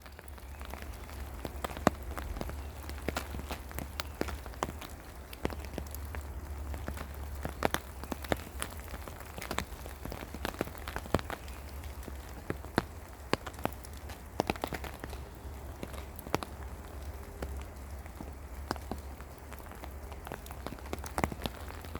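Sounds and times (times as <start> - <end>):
raindrops tapping: 0.0 - 21.9
soft rain patter: 0.0 - 21.9.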